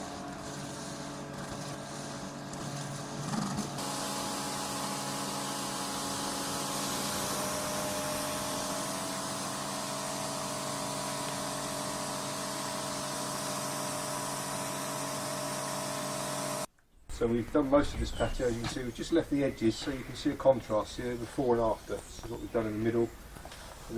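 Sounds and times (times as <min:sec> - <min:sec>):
high-pressure water jet hissing: 0:00.0 - 0:16.7
pressure washer motor humming: 0:00.0 - 0:16.7.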